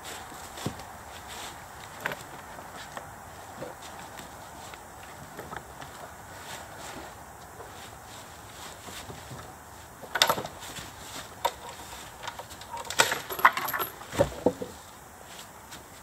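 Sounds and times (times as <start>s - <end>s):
knocks and clinks: 11.4s - 14.7s.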